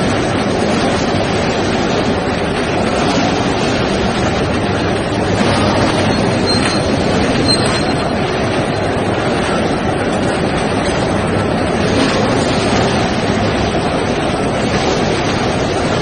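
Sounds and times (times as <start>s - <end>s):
faint high squeals: 6.0s - 8.2s.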